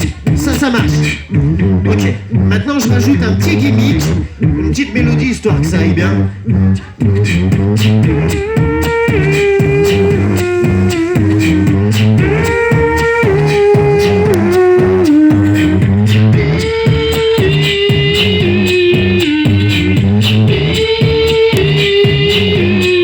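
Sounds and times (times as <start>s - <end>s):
beatbox drum pattern: 0.0s - 23.0s
mouth bass line: 0.0s - 23.0s
vocal melody phrase: 0.0s - 23.0s.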